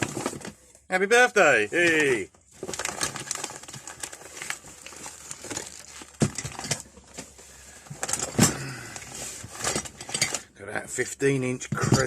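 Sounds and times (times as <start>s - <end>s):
rustling: 1.4s - 10.4s.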